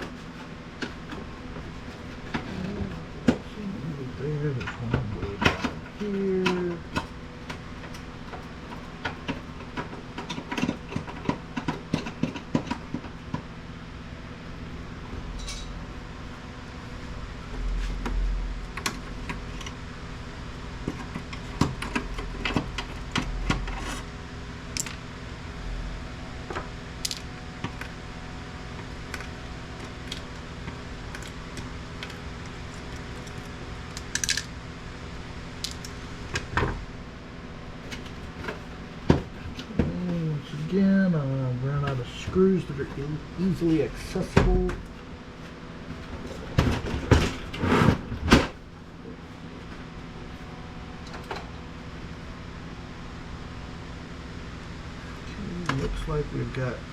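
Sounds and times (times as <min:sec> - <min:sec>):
low hum: 0:00.7 - 0:10.0.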